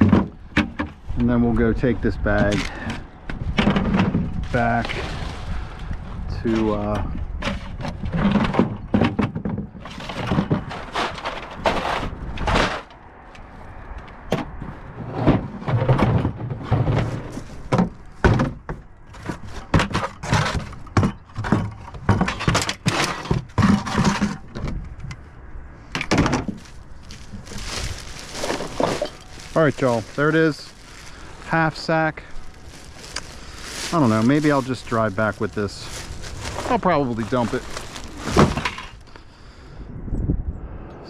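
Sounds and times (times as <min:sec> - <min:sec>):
plastic trash bag rustling: 0:02.1 - 0:06.7, 0:07.4 - 0:12.9, 0:26.2 - 0:39.2
footsteps: 0:26.4 - 0:39.3.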